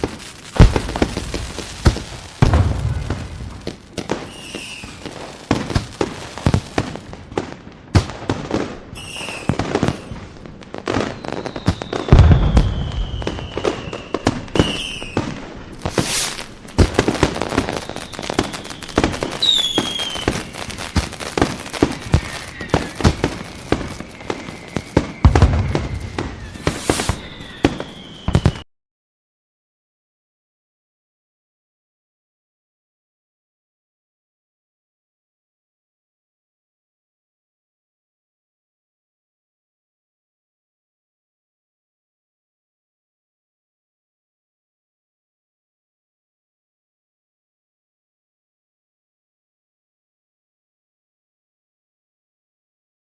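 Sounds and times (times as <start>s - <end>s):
firework whistles: 0.0s - 7.6s, 8.5s - 28.7s
fireworks booms: 0.0s - 28.6s
fireworks crackling and popping: 0.0s - 28.7s.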